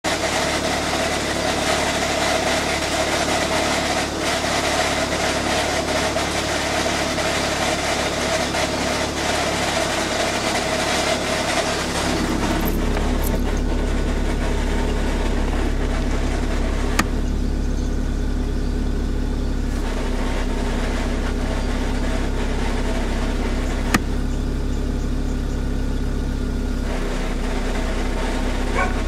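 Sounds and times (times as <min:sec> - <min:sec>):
car engine running: 0:00.0 - 0:29.0
gearbox grinding: 0:00.1 - 0:17.9.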